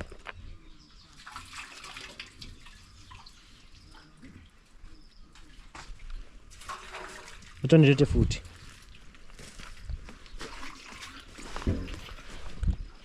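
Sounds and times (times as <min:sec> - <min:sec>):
water trickling and dripping: 0:01.0 - 0:08.0.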